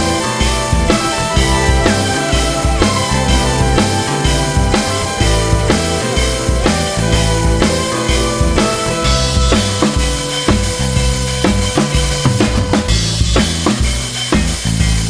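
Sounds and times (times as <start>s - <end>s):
rock music with drum beat: 0.0s - 15.0s.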